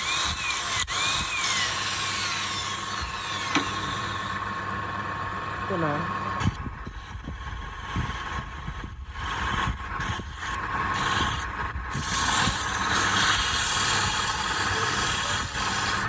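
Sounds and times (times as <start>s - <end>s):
wood lathe humming: 0.0s - 4.7s, 6.6s - 16.0s
scraping hiss on spinning wood: 6.5s - 16.0s.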